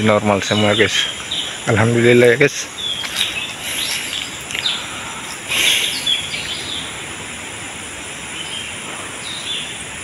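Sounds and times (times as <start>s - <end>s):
outdoor background noise: 0.0s - 10.0s
bird chirps: 0.4s - 1.8s, 2.6s - 7.0s.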